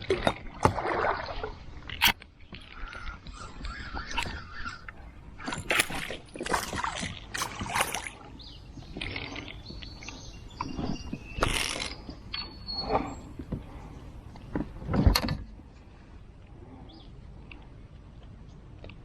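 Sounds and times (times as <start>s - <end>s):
paddle splashing in water: 0.0s - 12.0s.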